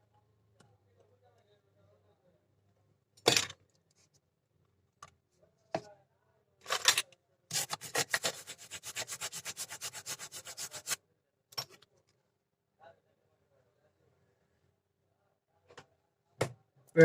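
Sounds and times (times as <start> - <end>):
brush scrubbing circuit board: 7.5 - 11.0.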